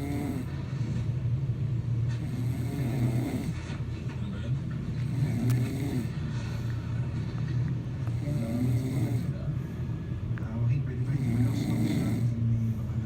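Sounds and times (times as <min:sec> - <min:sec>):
man snoring: 0:00.0 - 0:00.6, 0:02.2 - 0:03.6, 0:05.0 - 0:06.2, 0:08.1 - 0:09.4, 0:11.0 - 0:12.4.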